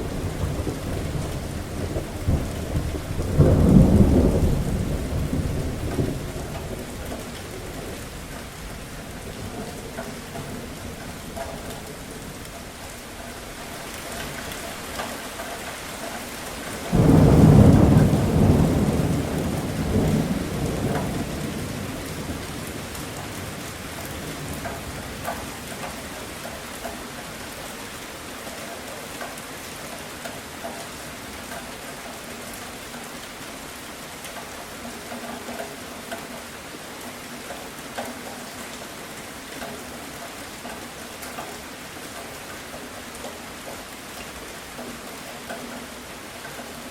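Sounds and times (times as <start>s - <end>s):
thunder rumbling: 0.0s - 8.1s, 16.5s - 25.6s
steady rain: 0.0s - 46.9s.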